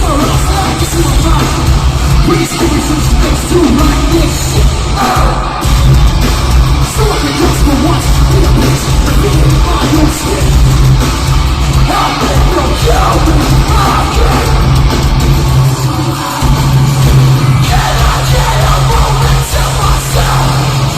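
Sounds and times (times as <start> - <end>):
harsh screamed vocals: 0.0 - 5.8, 11.7 - 20.9
metal band playing: 0.0 - 20.9.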